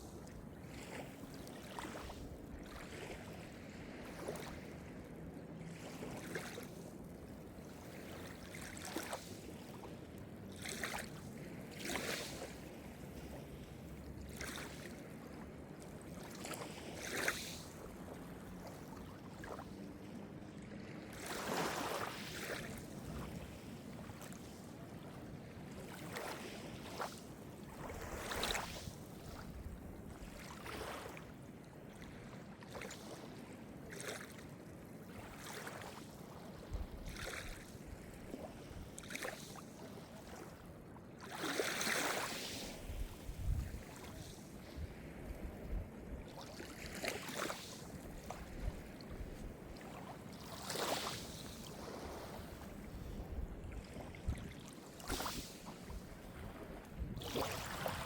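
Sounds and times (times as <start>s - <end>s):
small waves breaking ashore: 0.0s - 58.0s.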